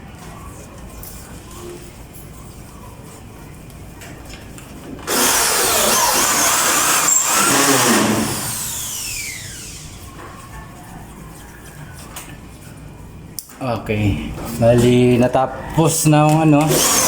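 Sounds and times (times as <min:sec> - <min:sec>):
power tool motor whining: 0:05.0 - 0:10.0, 0:16.6 - 0:17.0.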